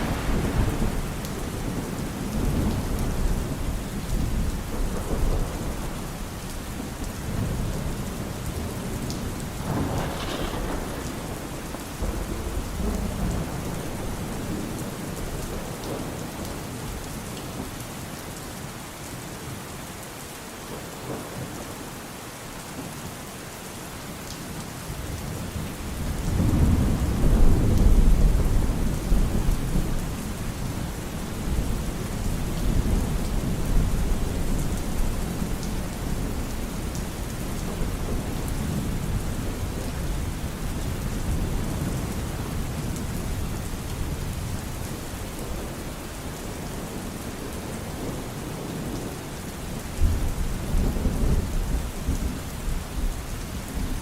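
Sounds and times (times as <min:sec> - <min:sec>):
rolling thunder: 0:00.0 - 0:06.1, 0:07.2 - 0:16.2, 0:26.0 - 0:46.0
steady rain falling: 0:00.0 - 0:54.0.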